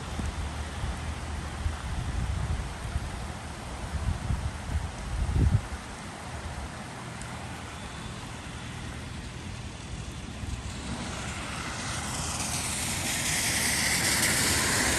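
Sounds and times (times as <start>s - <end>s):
floodwater rushing: 5.8s - 14.9s.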